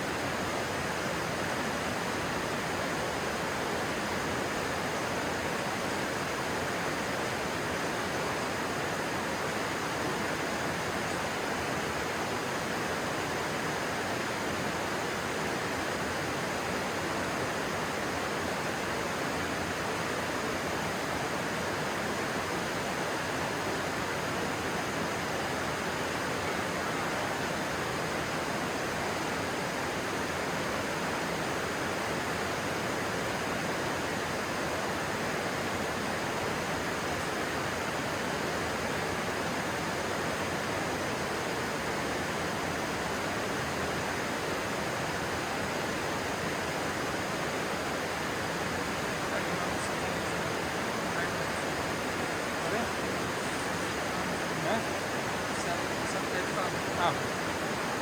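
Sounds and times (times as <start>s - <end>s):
stream water flowing: 0.0s - 58.0s.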